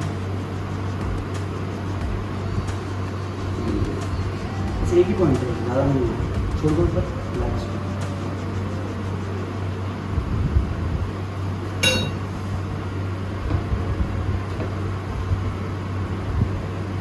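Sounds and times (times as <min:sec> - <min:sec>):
steady low hum: 0:00.0 - 0:17.0
sharp ringing clink: 0:11.8 - 0:12.3.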